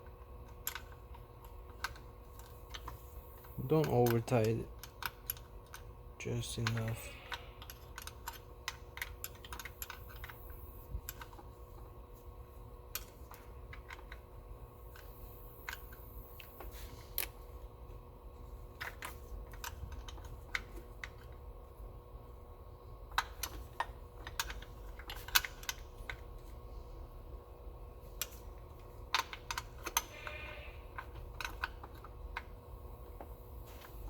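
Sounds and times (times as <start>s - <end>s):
low steady hum: 0.0s - 34.0s
hand tools clicking and tapping: 6.6s - 11.4s, 29.1s - 32.5s.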